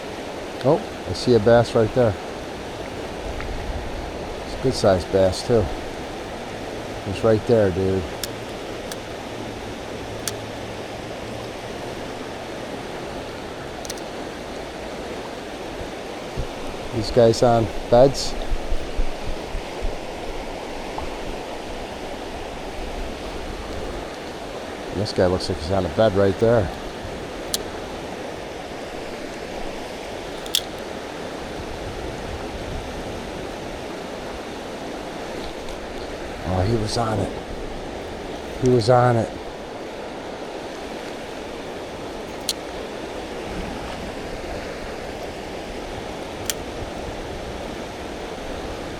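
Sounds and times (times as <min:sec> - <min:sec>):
river water rushing: 0:00.0 - 0:48.9
sharp clicks: 0:08.1 - 0:09.1, 0:10.2 - 0:10.5, 0:13.8 - 0:14.2, 0:30.1 - 0:30.9, 0:42.3 - 0:42.9, 0:46.3 - 0:46.8
short sharp clicks: 0:30.4 - 0:30.8.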